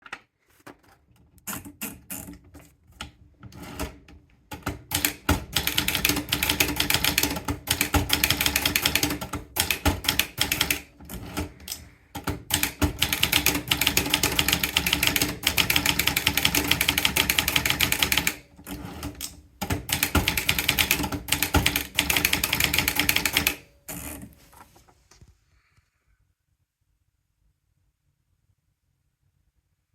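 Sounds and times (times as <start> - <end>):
typewriter keystrokes: 3.6 - 23.7.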